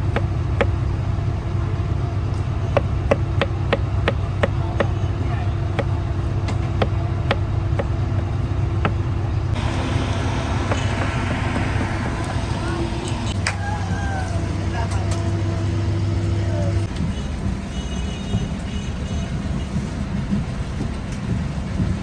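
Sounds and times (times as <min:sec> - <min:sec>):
sharp knocks: 0:09.6 - 0:12.4.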